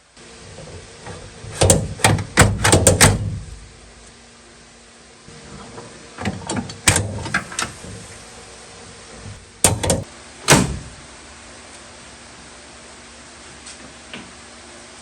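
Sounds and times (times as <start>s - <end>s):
trunk lock clicks and knocks: 1.5s - 3.6s, 9.6s - 11.0s.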